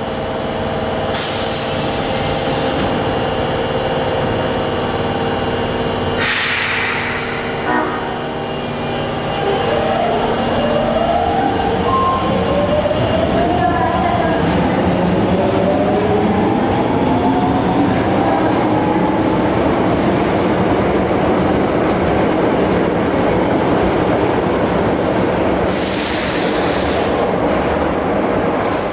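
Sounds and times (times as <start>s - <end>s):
subway train motors whining: 0.0s - 28.9s
train rolling rumble: 0.0s - 28.9s
short air hiss: 6.2s - 7.6s, 25.7s - 27.1s.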